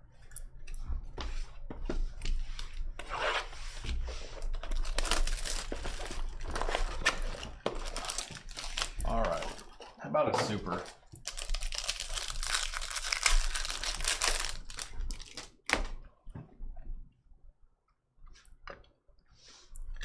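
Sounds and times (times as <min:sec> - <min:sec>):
card pack wrapper crinkling and tearing: 0:04.6 - 0:09.8, 0:10.7 - 0:15.9.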